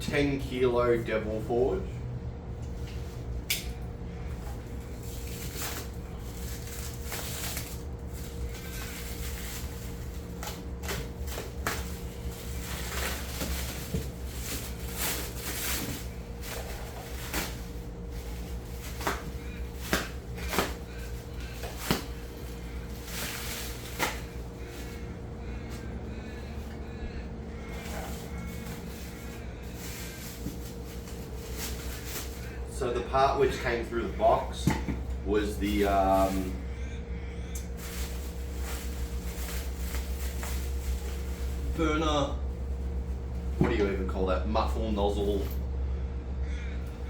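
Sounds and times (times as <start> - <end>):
steady background hum: 0.0 - 47.0
knocks clicks and scrapes unpacking: 4.4 - 25.0.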